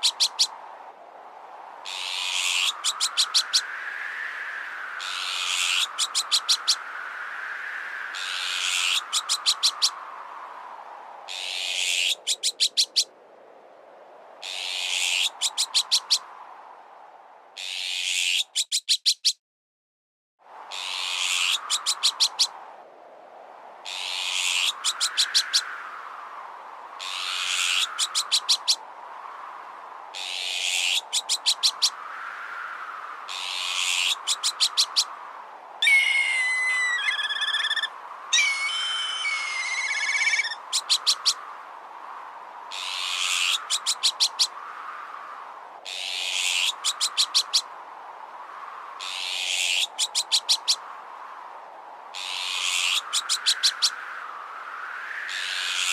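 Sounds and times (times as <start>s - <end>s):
strong wind whooshing: 0.0s - 17.6s, 20.5s - 55.9s
harsh bird alarm calls: 1.9s - 3.7s, 5.0s - 6.8s, 35.8s - 41.4s
whistled gliding bird calls: 35.8s - 41.4s.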